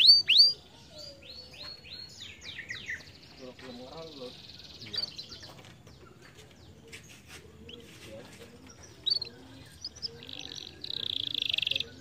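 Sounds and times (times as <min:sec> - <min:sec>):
rapid bird trill: 0:00.0 - 0:00.7, 0:08.7 - 0:12.0
canaries chirping: 0:00.0 - 0:12.0.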